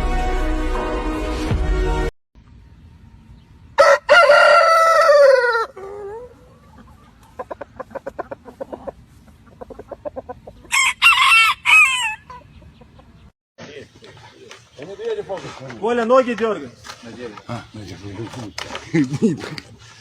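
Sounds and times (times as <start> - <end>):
music: 0.0 - 2.1
rooster crowing: 3.8 - 6.4, 10.7 - 12.4
chickens clucking: 5.4 - 10.8, 12.0 - 15.8.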